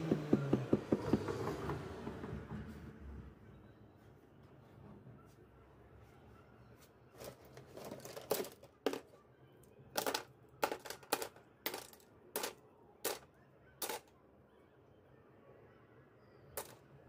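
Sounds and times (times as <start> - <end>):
hard objects clacking and knocking: 7.2 - 9.2, 9.9 - 14.1, 16.6 - 16.8.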